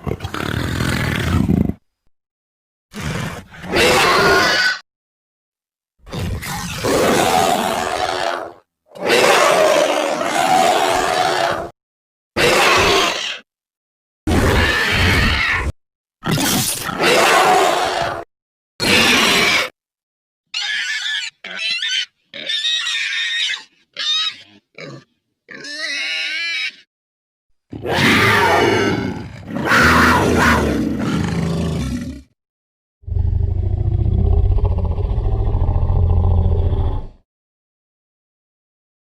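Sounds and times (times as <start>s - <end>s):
creature roaring: 2.9s - 4.8s, 6.1s - 11.8s, 12.4s - 13.5s, 14.3s - 19.7s, 27.7s - 32.4s, 33.0s - 37.2s
low rumbling growl: 33.0s - 37.2s.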